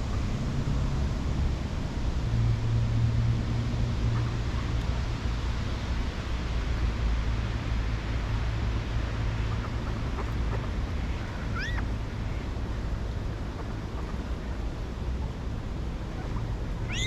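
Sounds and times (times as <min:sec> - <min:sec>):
outdoor background hiss: 0:00.0 - 0:17.0
bird call: 0:11.5 - 0:11.8
faint bird chirps: 0:11.5 - 0:11.8.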